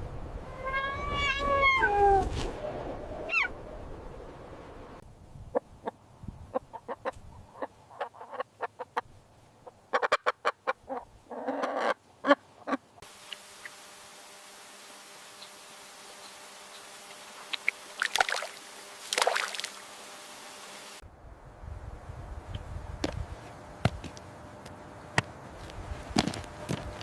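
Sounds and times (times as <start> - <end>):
chickens clucking: 5.5 - 12.8.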